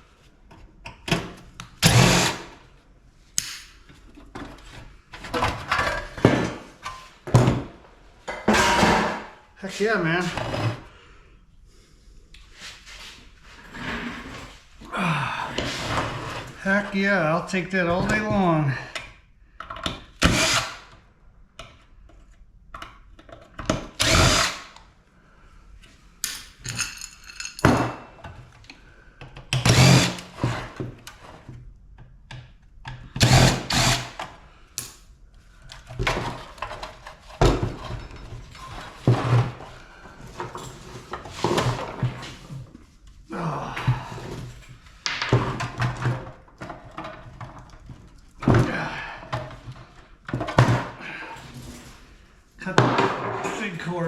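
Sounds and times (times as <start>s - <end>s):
handheld power tool running: 1.8s - 2.6s, 20.2s - 20.8s, 24.0s - 24.8s, 29.6s - 30.4s, 33.2s - 34.2s.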